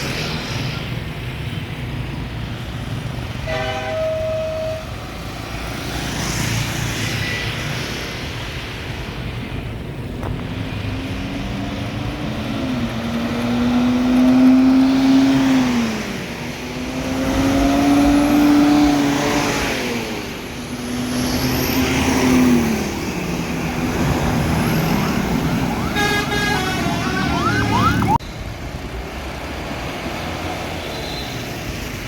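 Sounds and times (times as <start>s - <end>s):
traffic noise: 0.0s - 32.0s
bus musical air horn: 3.4s - 5.1s, 25.8s - 28.0s.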